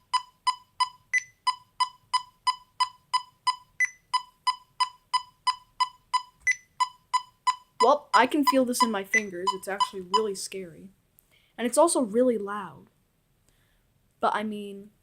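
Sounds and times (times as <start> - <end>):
higher-pitched accented beep: 0.0 - 10.3
electronic metronome beeping: 0.0 - 10.4.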